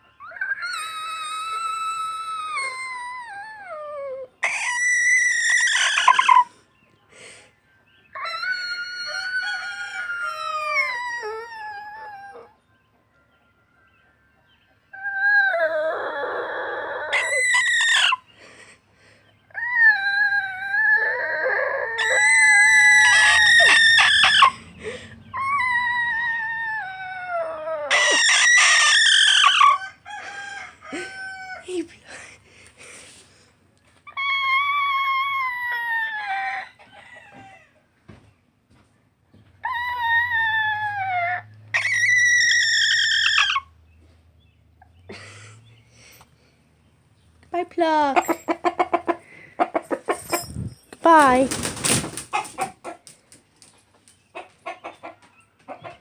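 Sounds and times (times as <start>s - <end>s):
chicken calling: 0.0s - 6.6s, 19.8s - 31.9s, 47.9s - 50.5s, 54.3s - 56.0s.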